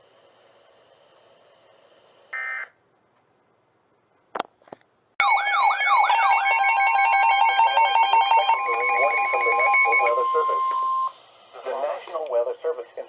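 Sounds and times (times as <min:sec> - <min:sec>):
electronic alarm tones: 0:02.4 - 0:02.7, 0:05.2 - 0:11.2
brief electronic tone burst: 0:08.6 - 0:11.2.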